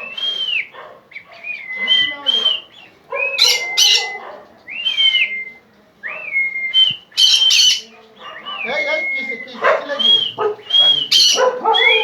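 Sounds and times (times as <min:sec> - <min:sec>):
bird whistling calls: 0:00.0 - 0:12.0
bird squawking harshly: 0:03.4 - 0:04.2, 0:07.2 - 0:07.9, 0:09.8 - 0:12.0.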